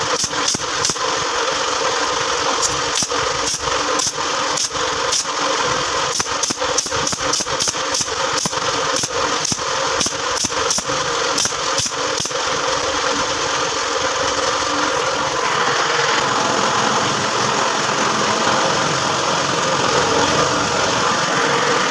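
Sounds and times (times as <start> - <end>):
motor running steadily: 0.0 - 21.9
nail gun firing into plywood: 0.1 - 1.0, 2.6 - 5.3, 6.1 - 12.4.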